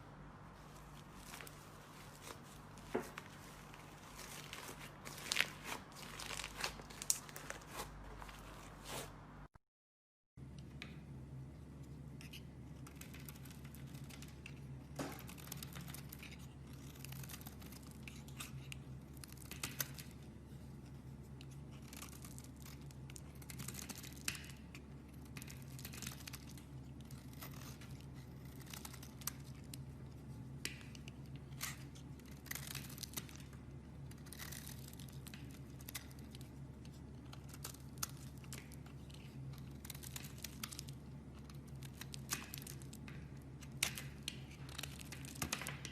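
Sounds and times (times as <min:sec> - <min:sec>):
steady low hum: 0:00.0 - 0:09.6
slime crackling and popping: 0:03.9 - 0:07.8, 0:21.5 - 0:45.9.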